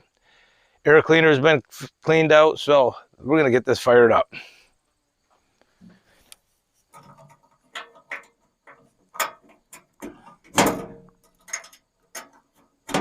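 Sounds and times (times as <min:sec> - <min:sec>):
mechanical clicks and knocks: 0:07.0 - 0:13.0.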